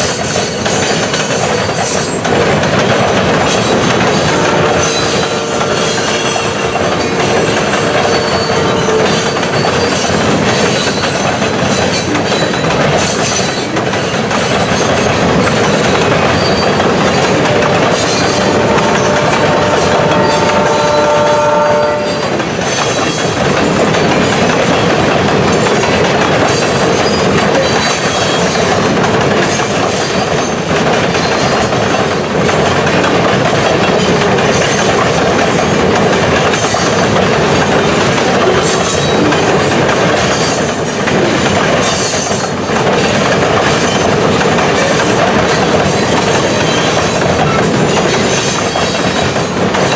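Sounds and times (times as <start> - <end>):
train wheels rumbling on rails: 0.0 - 49.9
high-pitched wheel squeals: 4.2 - 13.6.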